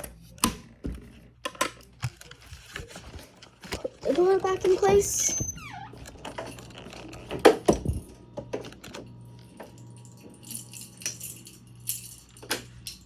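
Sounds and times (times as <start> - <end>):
keys jangling: 9.6 - 13.0.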